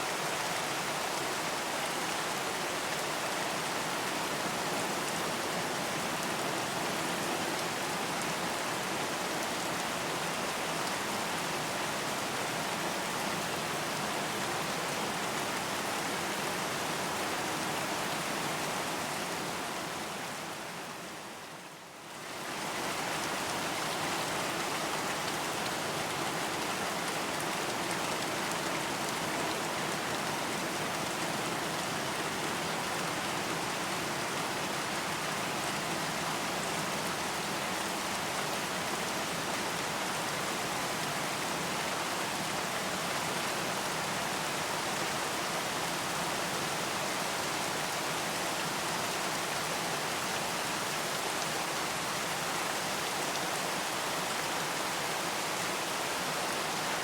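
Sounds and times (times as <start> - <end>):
steady rain hiss: 0.0 - 57.0.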